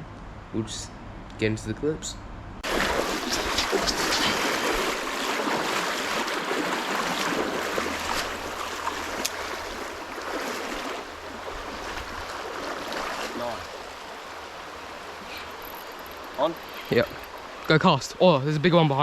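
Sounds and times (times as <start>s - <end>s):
creek water flowing: 2.6s - 19.0s.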